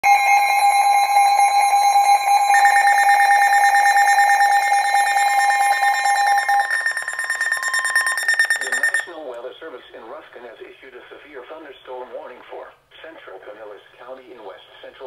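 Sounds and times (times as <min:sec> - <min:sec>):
two-tone alarm: 0:00.0 - 0:09.2.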